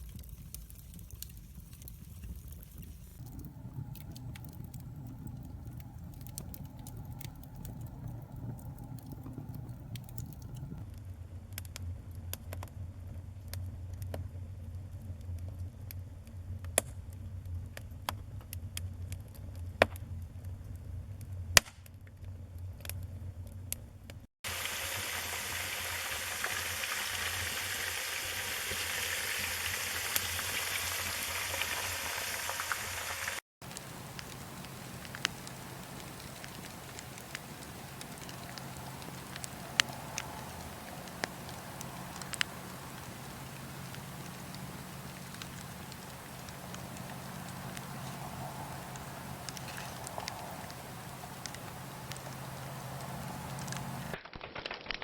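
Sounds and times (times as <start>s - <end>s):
campfire crackling and popping: 0.0s - 10.8s, 24.4s - 55.0s
steady hiss with fine crackle: 0.0s - 55.0s
low rumble: 3.2s - 10.8s, 33.6s - 54.2s.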